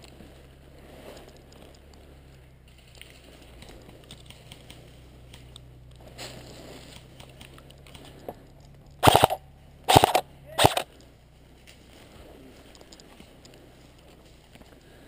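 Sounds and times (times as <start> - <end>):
airsoft rifle bursts: 9.0 - 10.9.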